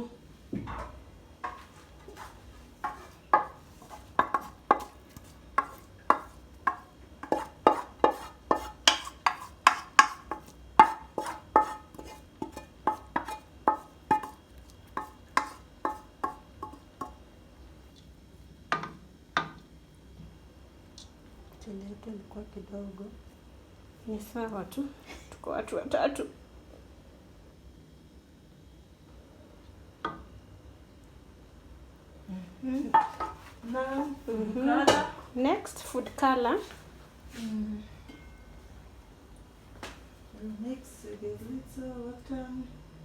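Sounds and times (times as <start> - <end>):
metal spoon knocking on metal pot: 4.2 - 4.9, 5.6 - 11.8, 12.4 - 14.4, 15.0 - 17.2.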